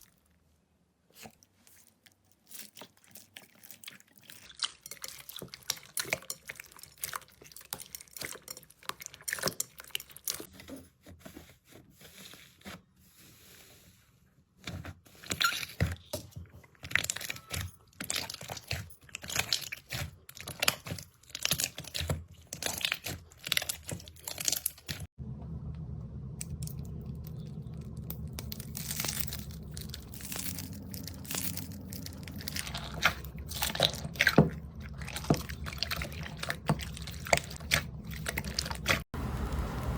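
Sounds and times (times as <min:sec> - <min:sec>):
steady low hum: 0:25.2 - 0:39.9
slime crackling and popping: 0:27.5 - 0:39.0.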